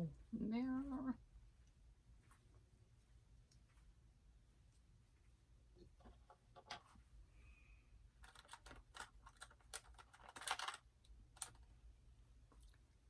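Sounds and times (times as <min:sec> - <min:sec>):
plastic clicks and packaging crinkles: 0:08.2 - 0:11.7.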